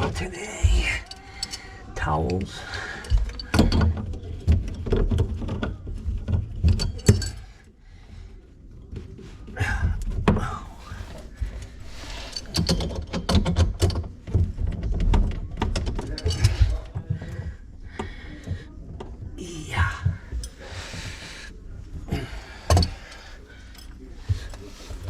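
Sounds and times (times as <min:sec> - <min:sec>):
tools and fittings clicking: 0:00.6 - 0:07.6, 0:12.0 - 0:14.5, 0:15.2 - 0:17.3.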